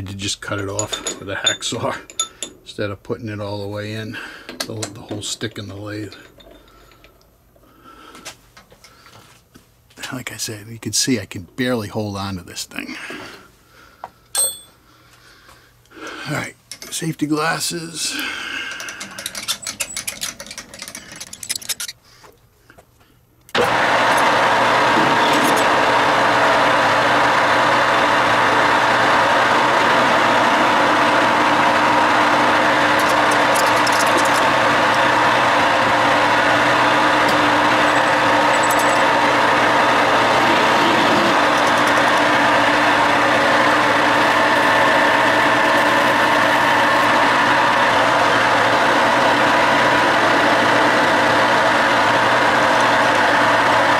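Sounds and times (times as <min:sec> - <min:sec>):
metal lathe humming: 0:23.5 - 0:53.9.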